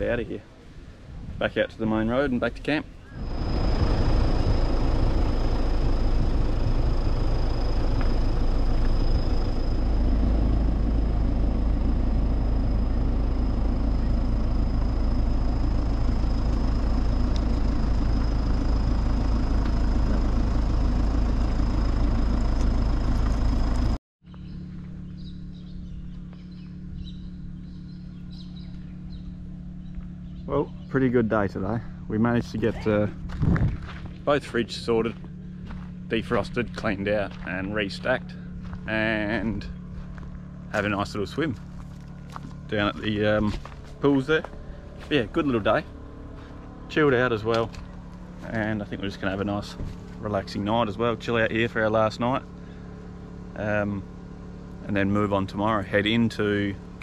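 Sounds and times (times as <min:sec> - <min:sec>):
birds chirping: 0:00.0 - 0:33.3
car engine and tyre rumble: 0:00.0 - 0:57.0
steady low hum: 0:00.0 - 0:57.0
thin high whine: 0:01.8 - 0:24.0.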